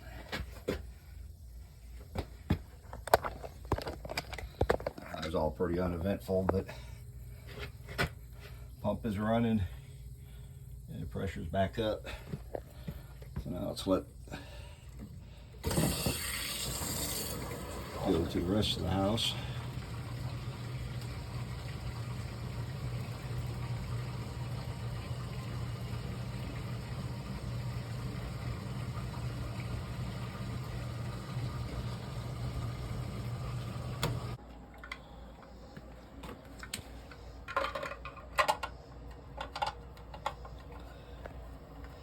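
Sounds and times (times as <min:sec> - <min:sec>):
pump motor humming: 0:12.0 - 0:42.0.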